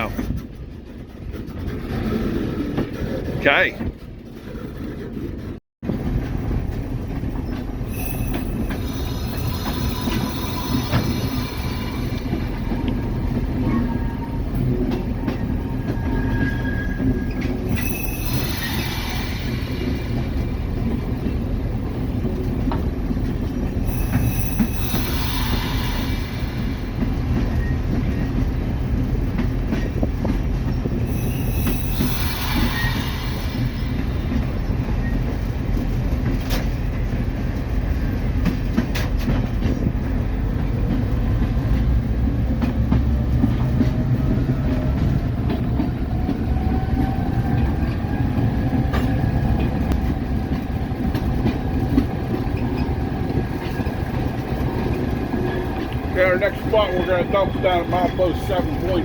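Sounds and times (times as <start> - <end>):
rumble of wheels on rail: 0.0 - 59.0
high-pitched wheel squeal: 7.9 - 20.6, 30.9 - 35.4.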